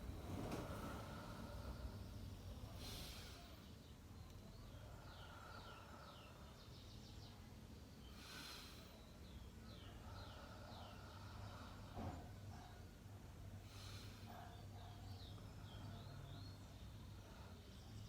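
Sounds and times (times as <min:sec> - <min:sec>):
person breathing deeply: 0:00.5 - 0:03.7, 0:04.7 - 0:06.8, 0:08.0 - 0:09.0, 0:09.7 - 0:12.2, 0:13.6 - 0:14.4.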